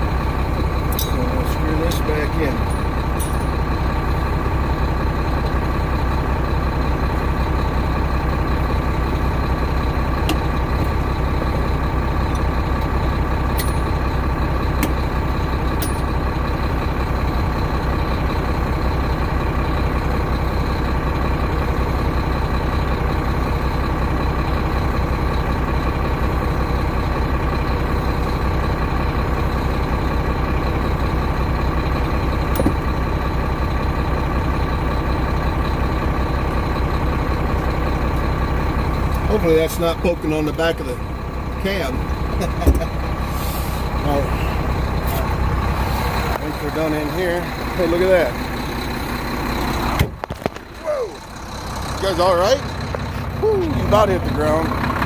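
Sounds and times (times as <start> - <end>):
diesel truck engine idling: 0.0 - 55.0.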